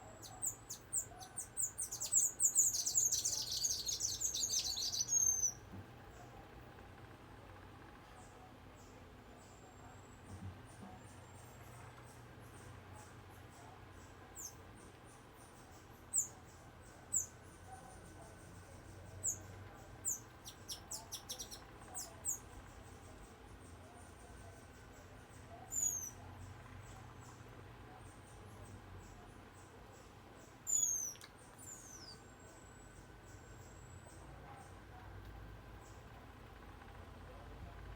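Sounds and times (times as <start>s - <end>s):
bird singing high chips: 0.4s - 5.6s, 30.7s - 32.2s.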